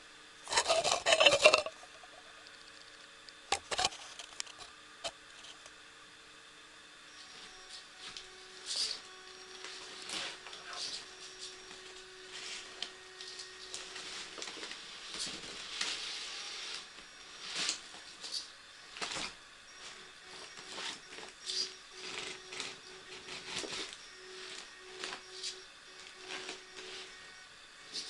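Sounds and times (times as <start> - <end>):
sharp knocks and scrapes: 0.4 - 2.1, 3.5 - 5.6
toy car electric motor whirring: 0.4 - 2.9, 12.8 - 28.0.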